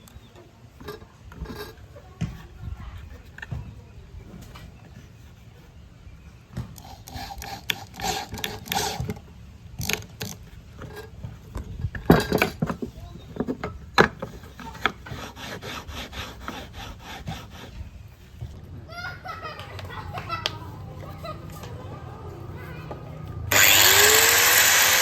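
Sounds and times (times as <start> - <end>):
irregular scraping and rubbing: 0.1 - 18.6.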